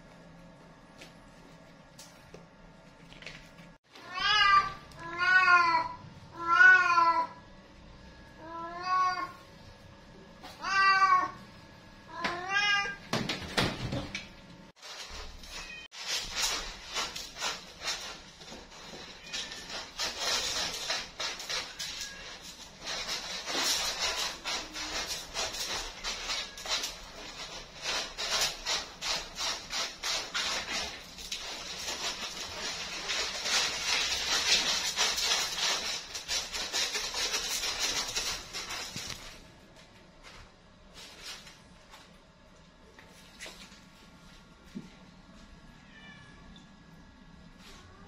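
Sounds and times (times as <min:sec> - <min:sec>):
cat meowing: 0:04.0 - 0:07.4, 0:12.1 - 0:13.0, 0:45.7 - 0:46.6
scuffling rustling noise: 0:14.8 - 0:45.6
scratchy rubbing strokes: 0:15.9 - 0:39.2.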